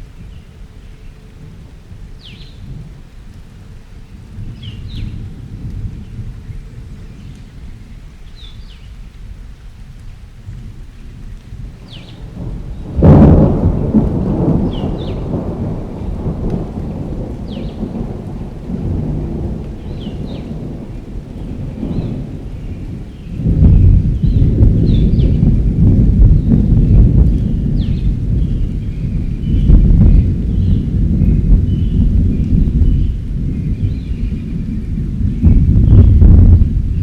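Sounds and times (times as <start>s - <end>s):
rain: 0.0s - 37.0s
close thunderclap: 11.6s - 37.0s
distant thunder rumbling: 11.6s - 37.0s.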